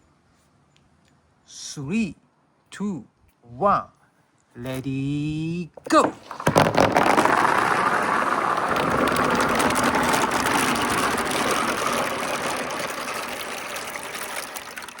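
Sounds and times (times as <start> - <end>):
glass marbles rolling and clattering: 6.0 - 15.0.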